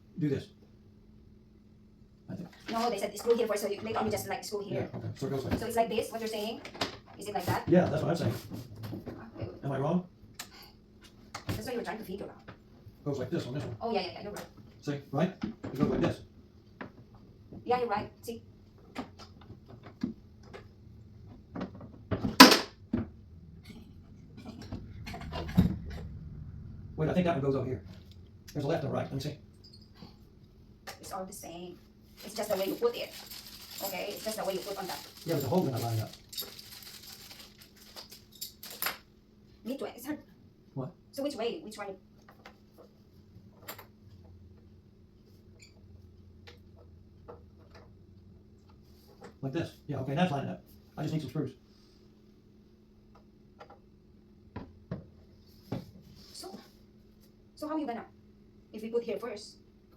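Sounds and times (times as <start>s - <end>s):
low steady hum: 0.0s - 59.9s.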